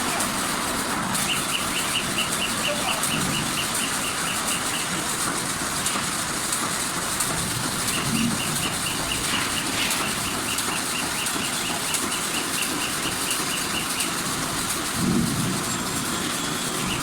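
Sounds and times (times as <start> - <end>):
machine hiss: 0.0 - 17.0
rapid high chirping: 0.2 - 5.2, 7.8 - 14.3.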